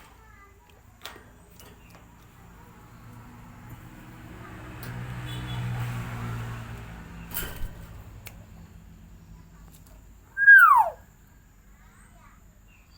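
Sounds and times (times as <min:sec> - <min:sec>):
bird whistle sliding down: 0:10.4 - 0:11.0.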